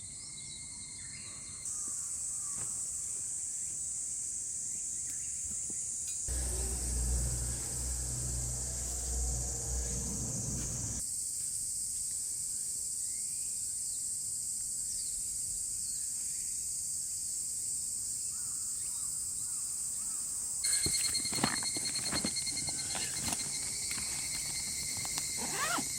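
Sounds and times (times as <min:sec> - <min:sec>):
insects chorus: 0:00.0 - 0:11.0, 0:18.1 - 0:25.9
thin steady whine: 0:06.3 - 0:11.0, 0:20.7 - 0:25.9.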